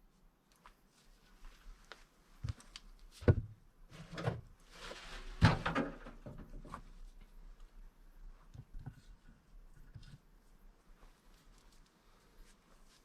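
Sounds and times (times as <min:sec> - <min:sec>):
dull knocks and thumps: 0:03.2 - 0:04.5
rustling: 0:03.9 - 0:13.0.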